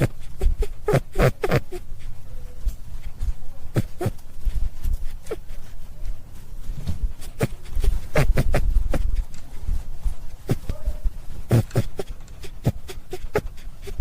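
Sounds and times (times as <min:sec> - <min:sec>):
rabbit clicking and knocking: 0:03.7 - 0:05.6, 0:06.7 - 0:09.7, 0:10.3 - 0:14.0.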